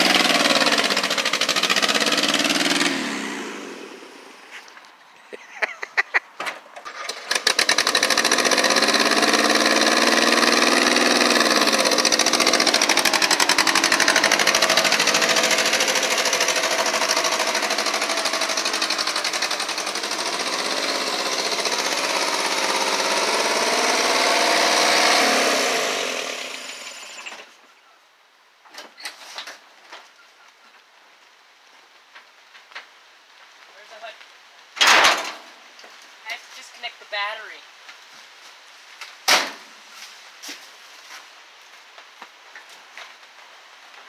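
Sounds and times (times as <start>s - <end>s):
engine running with rapid clatter: 0.0s - 4.4s, 6.9s - 27.5s.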